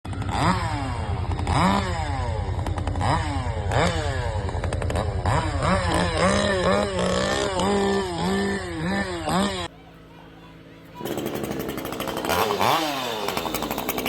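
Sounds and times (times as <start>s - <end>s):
chainsaw revving: 0.1s - 9.7s, 10.6s - 14.0s.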